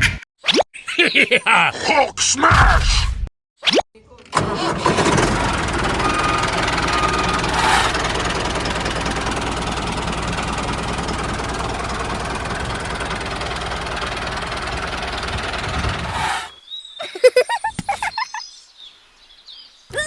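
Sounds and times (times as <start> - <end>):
small tractor engine chugging: 4.2 - 16.5
brief rush of noise: 16.0 - 16.6.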